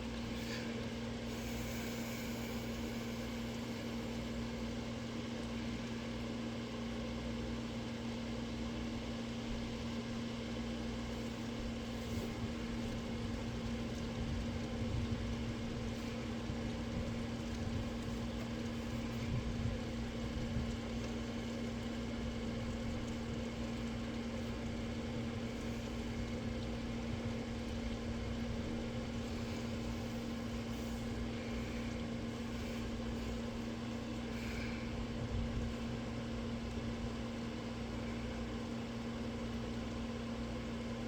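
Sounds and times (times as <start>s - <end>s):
machine humming: 0.0s - 5.9s.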